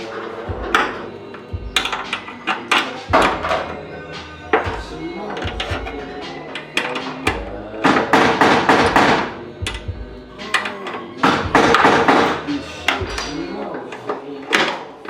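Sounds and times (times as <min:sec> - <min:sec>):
rapid metallic knocking: 0:11.2 - 0:13.4.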